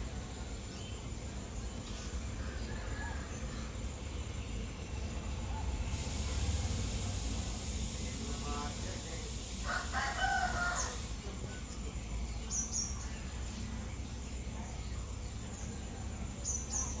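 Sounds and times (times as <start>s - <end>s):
bird call: 6.0s - 11.2s.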